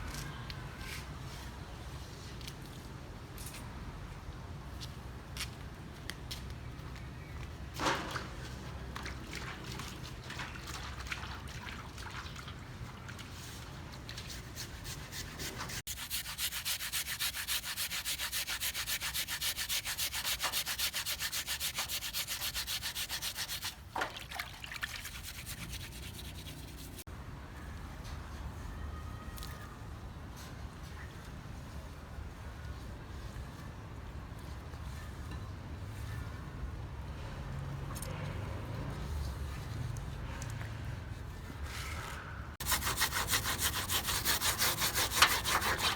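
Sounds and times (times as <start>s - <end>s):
scraping fish skin: 25.0s - 27.0s, 42.6s - 45.9s.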